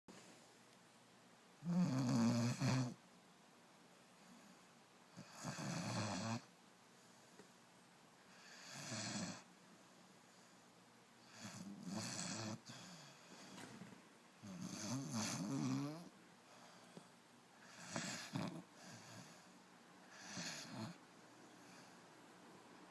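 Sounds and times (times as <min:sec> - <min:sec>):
puppy snoring: 0:01.6 - 0:03.0, 0:04.3 - 0:06.5, 0:08.3 - 0:09.5, 0:11.2 - 0:13.6, 0:14.4 - 0:16.8, 0:17.6 - 0:21.0.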